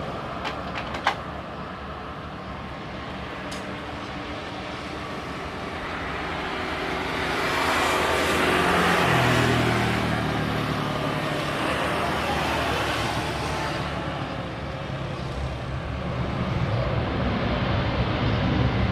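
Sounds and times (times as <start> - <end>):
vehicle passing by: 4.8 - 14.6.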